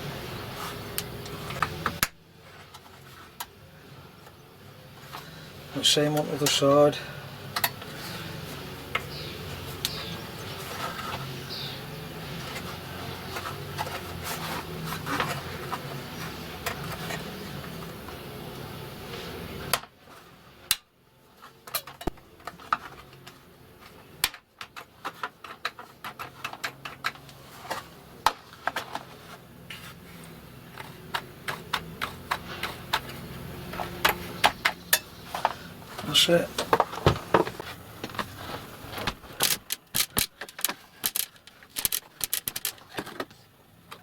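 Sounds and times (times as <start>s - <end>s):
plastic parts clicking into place: 39.0s - 44.0s.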